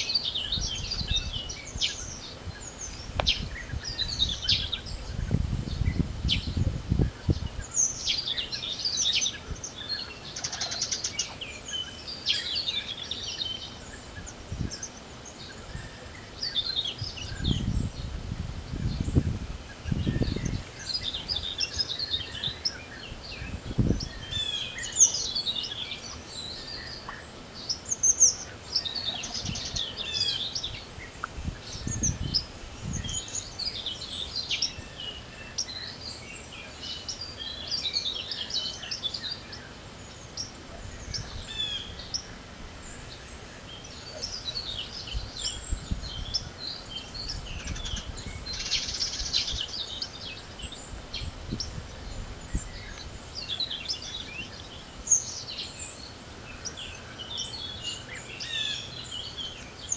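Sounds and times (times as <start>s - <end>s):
songbirds singing and calling: 0.0s - 59.9s
wind rumbling on microphone: 0.3s - 10.1s, 13.6s - 25.8s, 28.8s - 35.5s, 40.6s - 59.1s.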